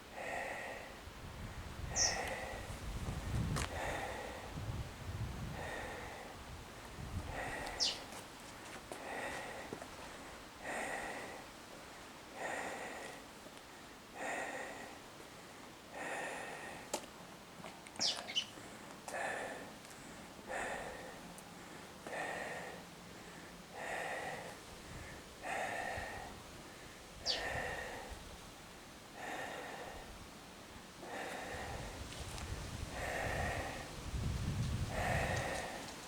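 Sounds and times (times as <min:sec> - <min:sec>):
person breathing: 0:00.2 - 0:01.0, 0:01.9 - 0:04.7, 0:05.4 - 0:06.4, 0:07.2 - 0:07.9, 0:09.0 - 0:11.5, 0:12.3 - 0:16.9, 0:18.6 - 0:28.3, 0:29.1 - 0:30.2, 0:31.0 - 0:36.0.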